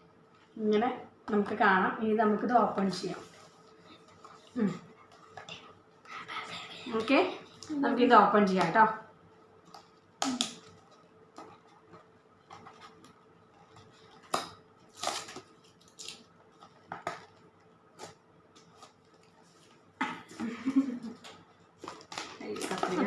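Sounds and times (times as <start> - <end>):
packaging clicks and rustles: 21.2 - 23.0.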